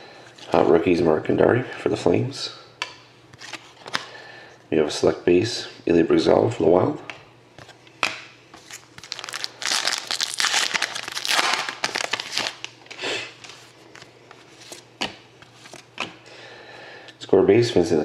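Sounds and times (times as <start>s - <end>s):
plastic wrapper crinkling: 8.6s - 14.8s.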